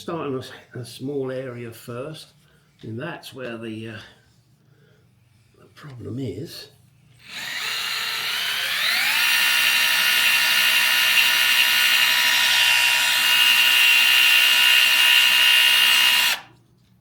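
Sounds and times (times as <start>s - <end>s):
electric drill motor whine: 7.2s - 16.5s.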